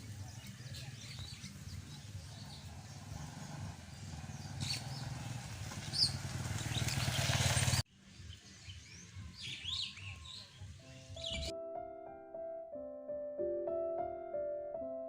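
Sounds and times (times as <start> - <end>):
vehicle engine humming: 0.0 - 7.8
birds chirping: 0.0 - 11.5.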